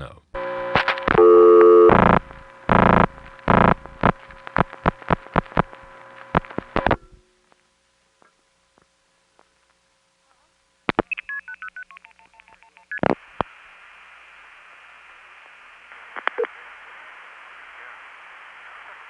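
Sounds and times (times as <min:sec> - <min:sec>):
telephone line hiss: 0:00.4 - 0:07.0, 0:11.0 - 0:19.0
two-tone dialing beeps: 0:01.2 - 0:03.8.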